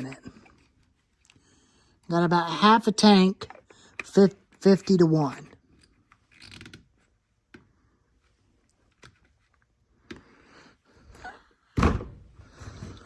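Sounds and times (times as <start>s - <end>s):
heavy thump: 11.8s - 12.3s.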